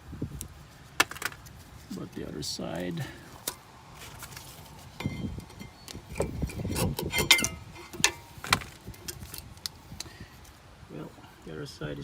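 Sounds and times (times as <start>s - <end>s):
metal brake clips clinking: 5.0s - 9.5s.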